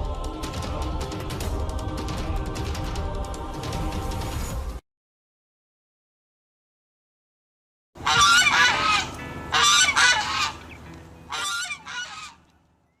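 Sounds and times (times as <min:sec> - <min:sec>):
large bird harsh calls: 0:08.0 - 0:12.5.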